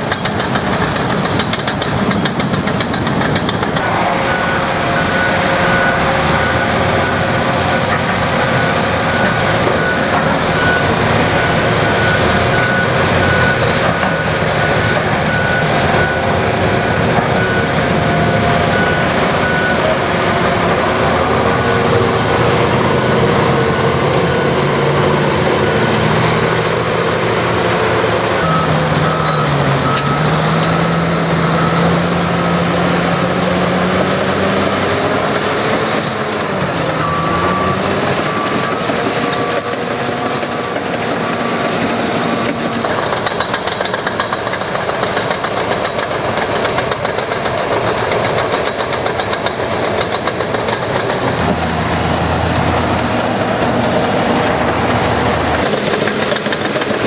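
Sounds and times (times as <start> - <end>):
engine revving under load: 0.0 - 44.3, 49.1 - 57.0
heavy diesel machinery working: 0.0 - 57.0
backup alarm beeping: 3.8 - 43.6.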